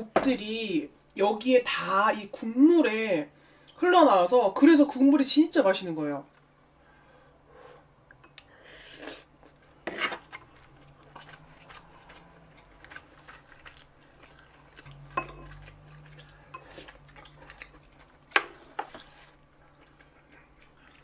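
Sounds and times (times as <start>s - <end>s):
soft chewing: 7.7s - 21.0s.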